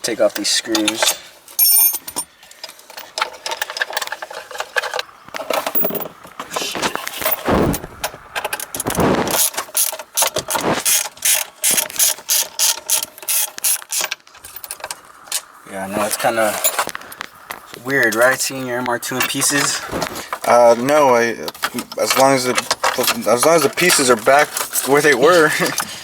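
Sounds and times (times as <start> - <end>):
handling noise: 0.1 - 26.0
ratchet wrench clicking: 9.4 - 15.4.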